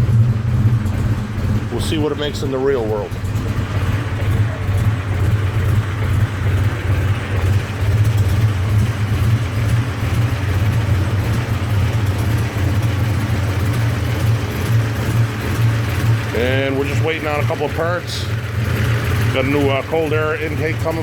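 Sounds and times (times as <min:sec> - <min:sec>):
vee eight engine idling: 0:00.0 - 0:21.0.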